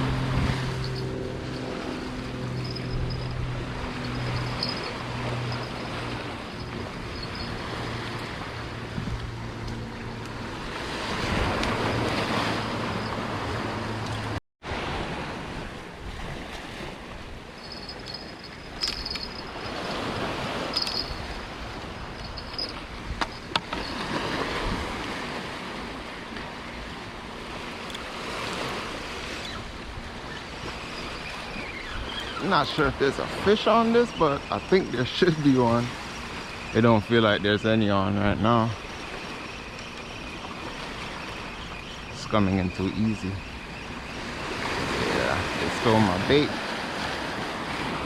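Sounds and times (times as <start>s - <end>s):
low steady hum: 0.0s - 10.6s
ocean surf washing: 0.0s - 48.0s.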